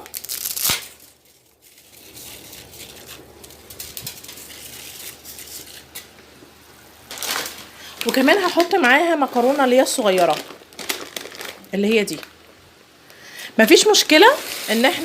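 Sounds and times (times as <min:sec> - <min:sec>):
dry spaghetti snapping: 0:00.0 - 0:06.2, 0:10.2 - 0:12.3
crackling and rustling pasta: 0:00.0 - 0:12.9, 0:13.6 - 0:15.0.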